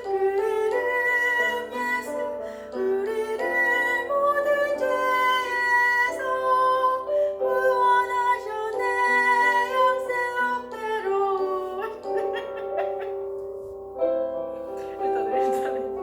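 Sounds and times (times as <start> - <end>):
plucked-string accompaniment: 7.6 - 16.0.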